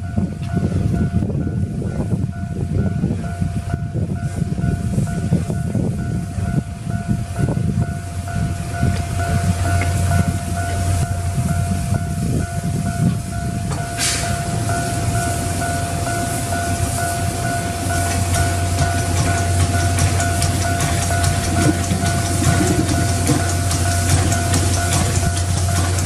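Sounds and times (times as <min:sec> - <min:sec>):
level crossing warning bell: 0:00.0 - 0:26.0
train low rumble: 0:00.0 - 0:26.0
short hiss: 0:13.9 - 0:14.5.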